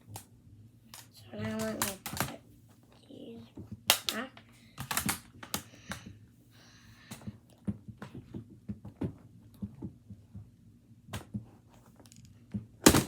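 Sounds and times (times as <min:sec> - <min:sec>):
card holders tapping and clicking: 0:04.8 - 0:06.1.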